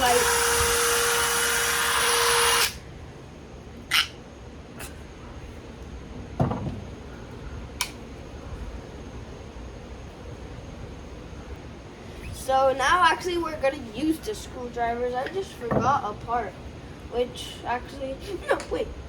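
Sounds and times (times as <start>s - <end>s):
electric drill motor running: 0.0s - 2.8s
knock of tool handled: 6.4s - 6.9s.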